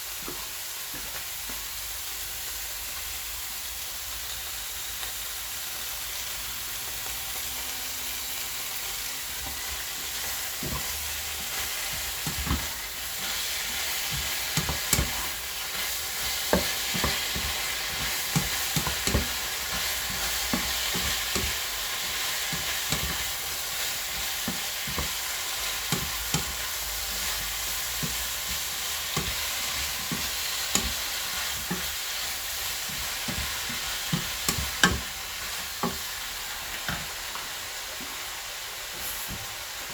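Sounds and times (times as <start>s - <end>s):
food sizzling in a hot pan: 0.0s - 39.9s
utensil knocking against pan: 10.6s - 32.1s, 32.8s - 36.1s.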